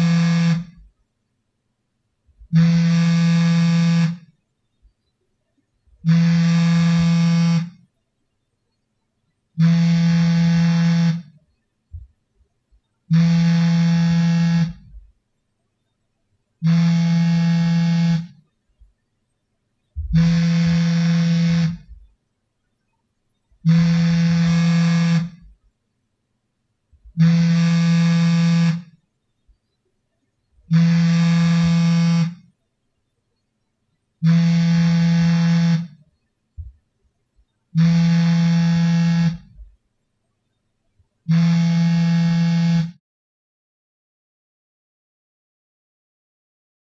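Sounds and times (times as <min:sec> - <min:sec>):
smartphone vibrating buzzes: 0:00.0 - 0:00.9, 0:02.5 - 0:04.3, 0:06.0 - 0:07.8, 0:09.6 - 0:11.4, 0:13.1 - 0:15.1, 0:16.6 - 0:18.4, 0:20.0 - 0:22.1, 0:23.6 - 0:25.6, 0:27.0 - 0:29.0, 0:30.6 - 0:32.5, 0:34.2 - 0:36.0, 0:37.8 - 0:39.7, 0:41.3 - 0:43.0.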